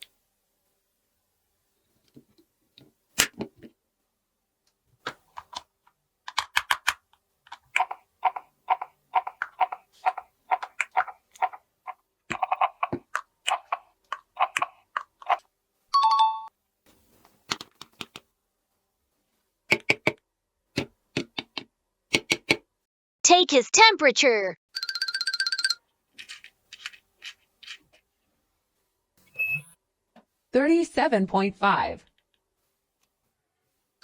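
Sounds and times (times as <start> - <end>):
plastic toy pieces clicking: 6.3 - 11.6, 24.9 - 27.8
brief beep: 29.3 - 29.8.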